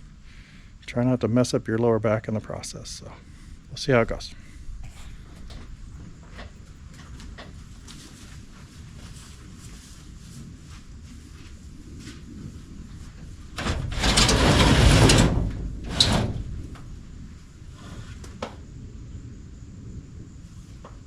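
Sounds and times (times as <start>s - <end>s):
loud sliding scraping noise: 13.6s - 16.9s.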